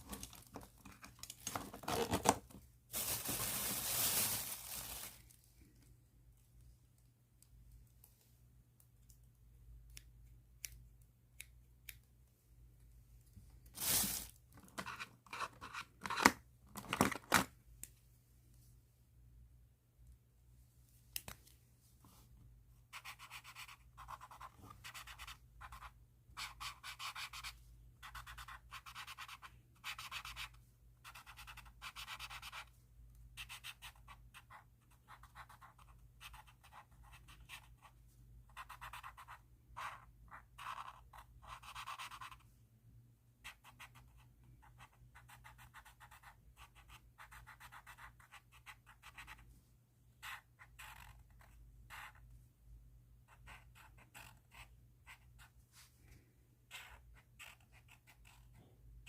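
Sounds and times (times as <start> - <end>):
pen scratching on paper: 22.9 - 32.7, 38.5 - 42.4, 56.7 - 58.6.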